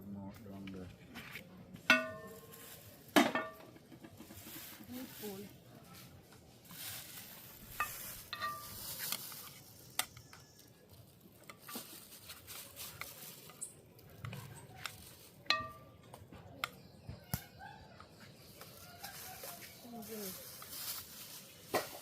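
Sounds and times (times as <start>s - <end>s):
utensil clinking against metal: 1.9s - 3.8s, 7.7s - 9.2s, 12.9s - 16.1s
metal utensil stirring in pot: 7.7s - 9.1s.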